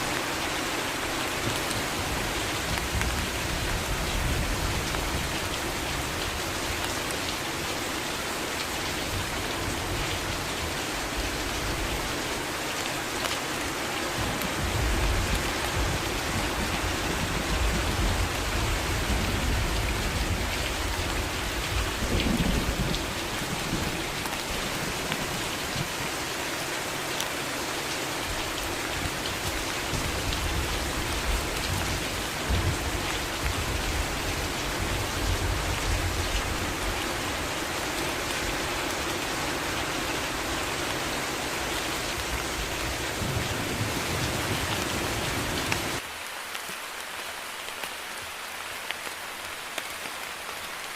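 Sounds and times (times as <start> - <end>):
heavy rain falling: 0.0 - 50.9
low rumbles of thunder: 14.2 - 24.0.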